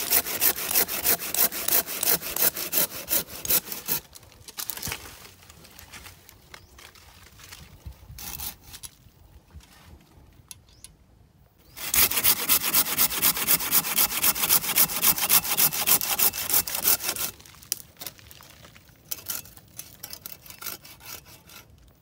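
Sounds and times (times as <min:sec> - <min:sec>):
hand saw cutting wood: 0:00.0 - 0:04.1, 0:11.7 - 0:17.4, 0:19.1 - 0:21.8.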